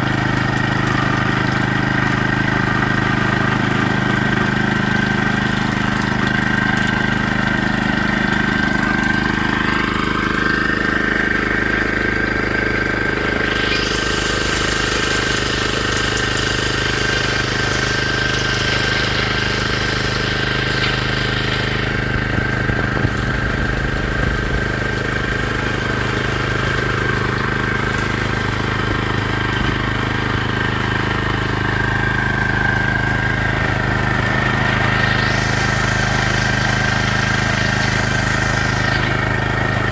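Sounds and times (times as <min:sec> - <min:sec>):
engine running low hum: 0:00.0 - 0:39.9
thin steady whine: 0:13.1 - 0:39.9.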